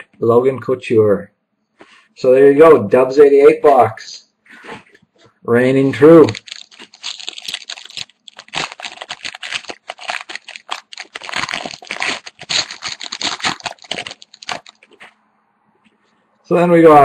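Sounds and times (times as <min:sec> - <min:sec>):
plastic wrapper tearing and crinkling: 0:06.0 - 0:15.1.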